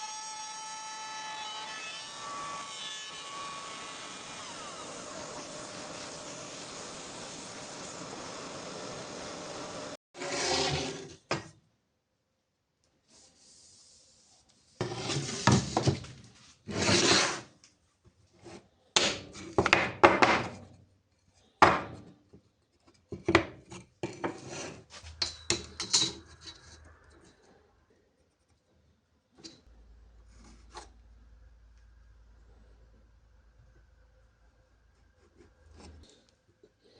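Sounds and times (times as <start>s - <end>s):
scraping strokes on wood: 16.7s - 17.5s.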